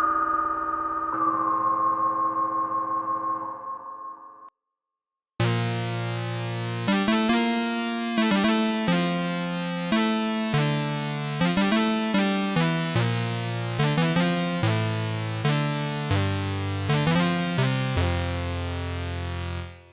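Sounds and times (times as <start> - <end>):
synthesizer playing low bright notes: 5.4 - 19.9.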